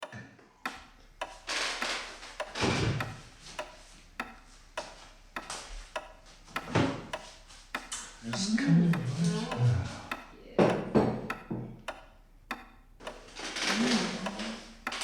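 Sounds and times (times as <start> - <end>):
dishes and cutlery clicking: 13.1 - 15.0.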